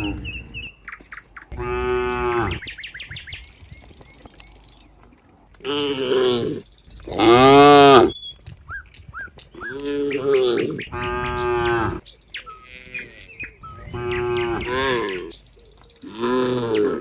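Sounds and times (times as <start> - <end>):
cattle mooing: 0.0 - 0.7, 1.5 - 2.7, 5.6 - 8.1, 9.7 - 15.4, 16.1 - 17.0.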